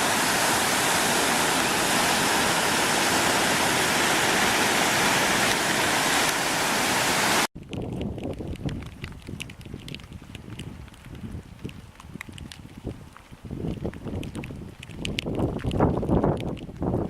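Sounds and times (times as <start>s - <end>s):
loud rushing noise: 0.0s - 7.5s.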